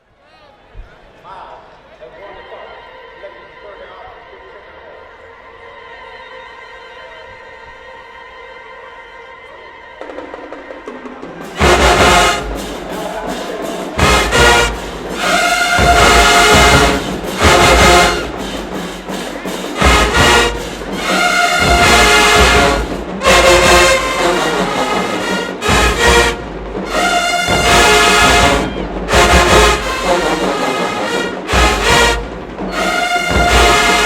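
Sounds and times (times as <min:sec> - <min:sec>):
brass fanfare: 0:11.4 - 0:34.0
heavy drum hits: 0:11.5 - 0:30.5, 0:31.4 - 0:34.0.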